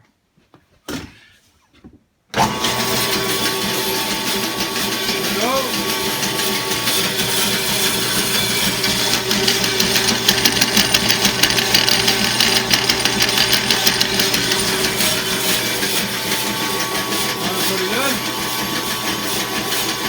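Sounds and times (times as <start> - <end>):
bandsaw motor hum: 2.4 - 20.0
fast rattling clatter: 8.6 - 15.8.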